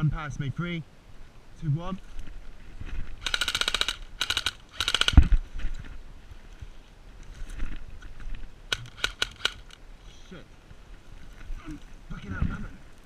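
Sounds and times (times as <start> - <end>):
airsoft rifle firing bursts: 3.2 - 5.4, 8.7 - 9.8.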